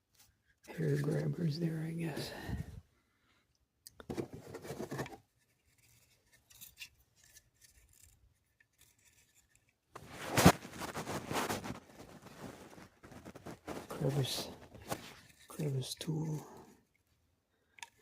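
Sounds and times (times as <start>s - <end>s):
plastic packaging rustling: 4.1s - 16.4s.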